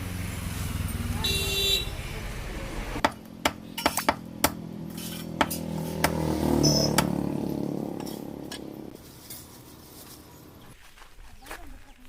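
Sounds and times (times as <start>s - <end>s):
vehicle engine running: 0.0s - 10.6s
short horn beep: 1.2s - 2.0s.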